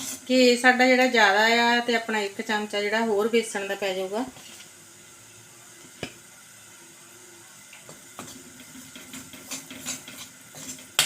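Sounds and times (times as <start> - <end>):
flour sizzling in hot ghee: 0.0 - 11.0.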